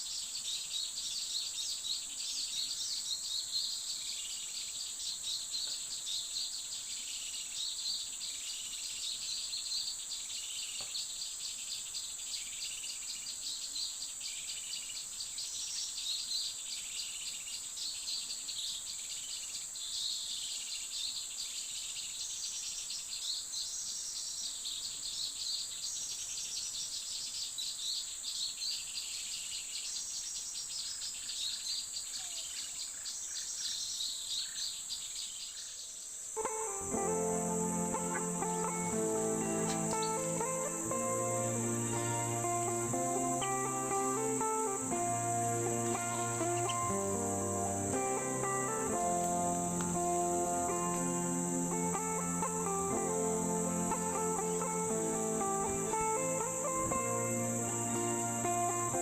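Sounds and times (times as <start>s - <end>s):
bird chirping: 0.0s - 59.0s
insect drone: 36.0s - 59.0s.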